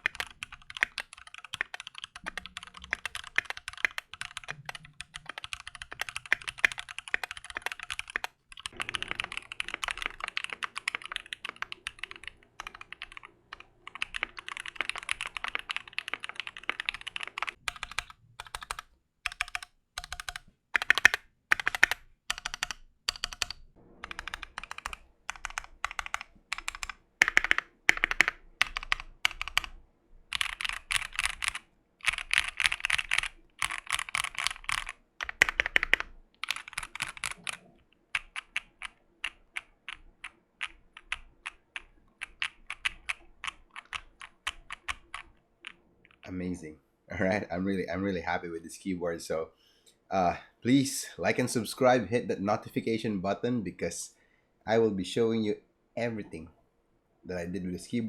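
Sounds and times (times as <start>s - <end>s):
mechanical keyboard typing: 0.0s - 46.2s.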